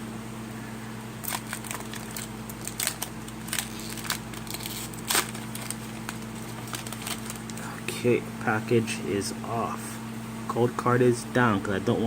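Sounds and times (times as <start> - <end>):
foil wrapper crinkling: 1.2 - 7.8.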